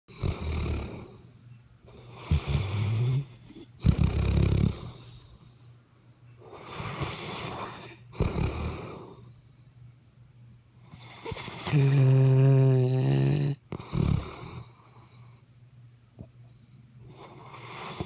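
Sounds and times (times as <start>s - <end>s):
loud rattling snores: 0.1s - 1.2s, 2.2s - 5.0s, 11.3s - 14.8s.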